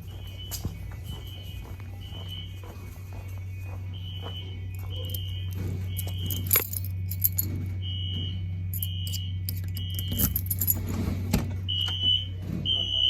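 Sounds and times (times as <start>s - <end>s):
fire alarm beeps: 0.0s - 11.0s, 11.6s - 13.0s
steady low hum: 0.0s - 13.0s
jingling metallic clinks: 4.8s - 7.6s, 8.7s - 11.0s.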